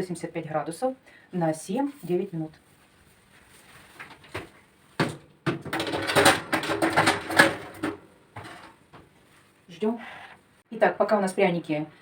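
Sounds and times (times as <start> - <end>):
metal scraping on oven rack: 5.8 - 8.8.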